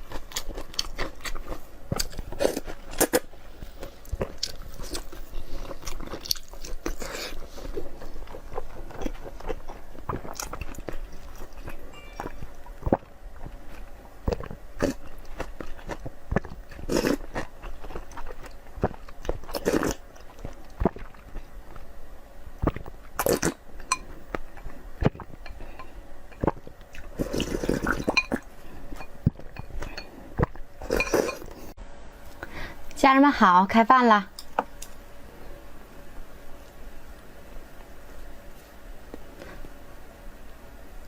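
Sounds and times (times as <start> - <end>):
person chewing food: 0.0 - 22.0, 22.6 - 31.8.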